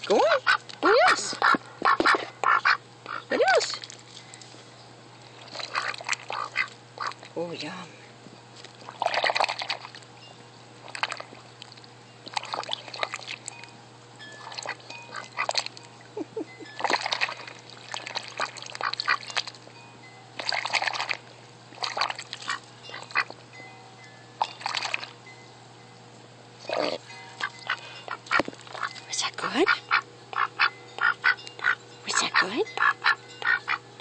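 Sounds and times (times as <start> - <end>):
dog snuffling and slurping in water: 5.3 - 7.3, 8.6 - 10.0, 10.9 - 13.4, 16.8 - 19.6, 20.4 - 21.2, 21.8 - 23.4, 26.6 - 29.6.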